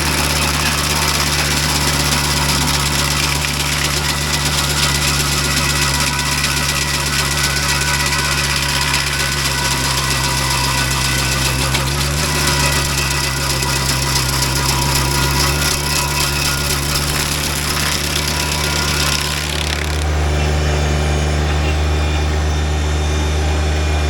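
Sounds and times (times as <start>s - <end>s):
tractor engine running under load: 0.0s - 24.0s.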